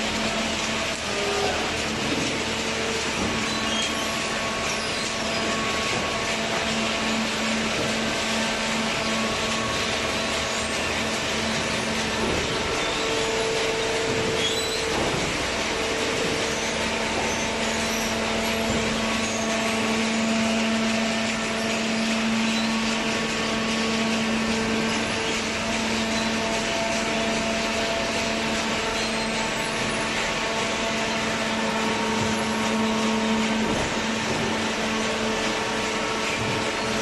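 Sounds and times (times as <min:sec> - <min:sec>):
paper baler humming: 0:00.0 - 0:37.0.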